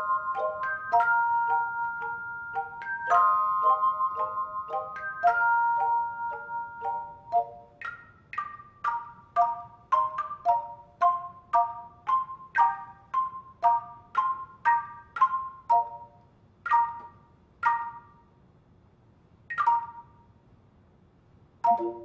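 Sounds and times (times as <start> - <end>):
handbell choir ringing chords: 0.0 - 16.1, 21.7 - 22.0.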